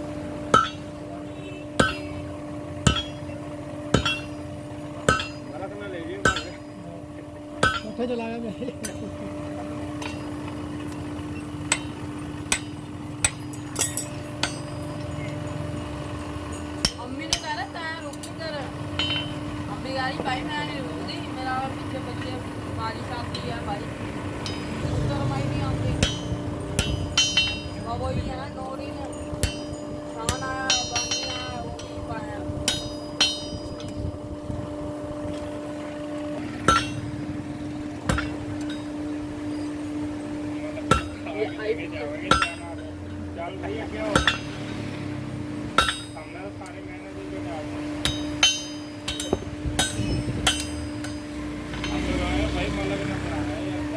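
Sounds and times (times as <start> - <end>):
steady low hum: 0.0 - 53.9
hammer blows on anvil: 0.5 - 4.4, 7.6 - 8.0, 25.7 - 34.1, 36.6 - 37.2, 40.8 - 41.4, 44.0 - 44.9, 45.7 - 46.4, 48.0 - 52.2.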